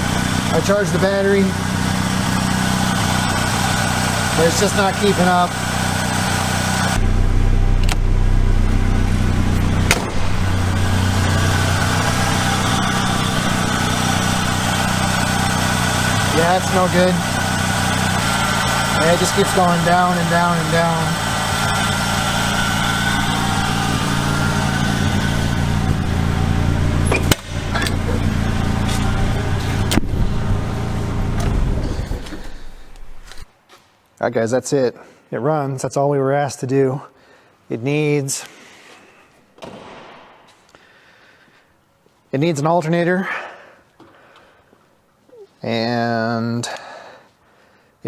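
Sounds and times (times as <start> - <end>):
car engine idling: 0.0 - 33.4
heavier low engine rumble: 0.0 - 33.5.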